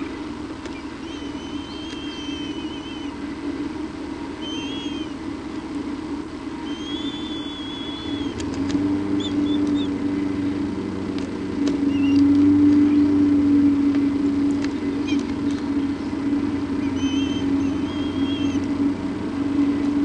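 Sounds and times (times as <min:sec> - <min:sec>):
steady low hum: 0:00.0 - 0:20.0
bird chirps: 0:00.7 - 0:03.2, 0:04.4 - 0:05.2, 0:06.6 - 0:08.4, 0:09.2 - 0:10.1, 0:11.8 - 0:13.1, 0:14.8 - 0:16.0, 0:16.8 - 0:18.7
faint clicks: 0:01.8 - 0:02.4, 0:11.1 - 0:12.9, 0:13.9 - 0:15.7.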